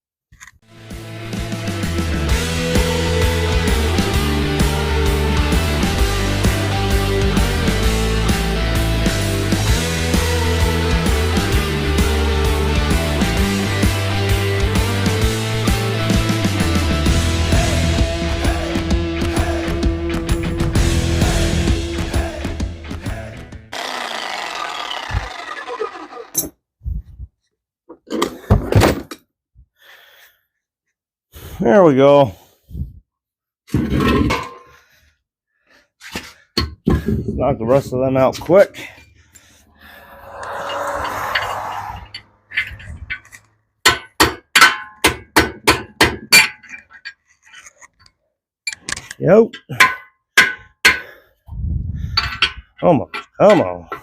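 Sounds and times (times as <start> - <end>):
power tool running: 23.7 - 26.4
hammer striking metal: 43.9 - 46.7, 49.6 - 51.1.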